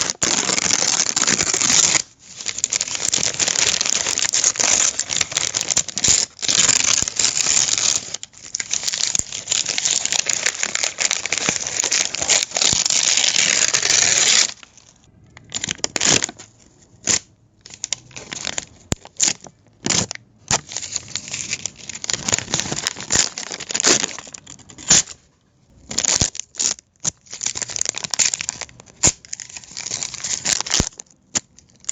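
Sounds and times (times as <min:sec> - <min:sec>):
paper being crumpled: 0:00.0 - 0:14.9, 0:17.1 - 0:25.1.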